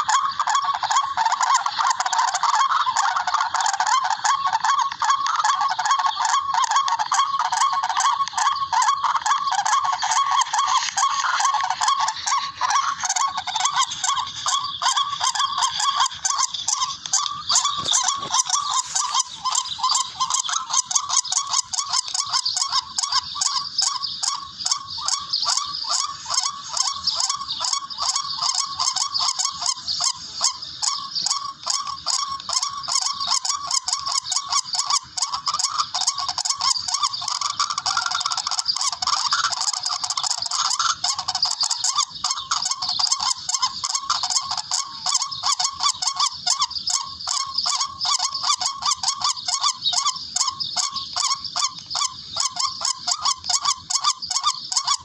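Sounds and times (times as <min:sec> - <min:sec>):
recorded bird lure calls: 0:00.0 - 0:55.0.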